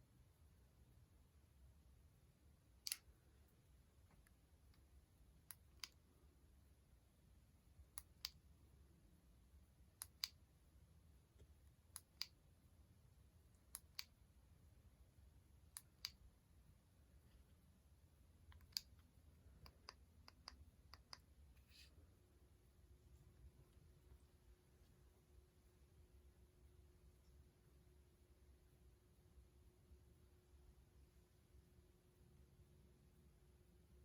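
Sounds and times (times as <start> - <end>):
faint low hum: 0.0 - 34.0
sharp clicks: 2.8 - 3.1, 18.5 - 21.3.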